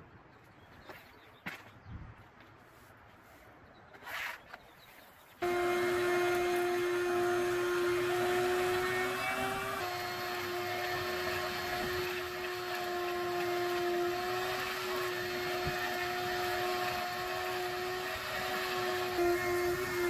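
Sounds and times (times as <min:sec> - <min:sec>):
vacuum cleaner motor running: 0:05.4 - 0:20.0.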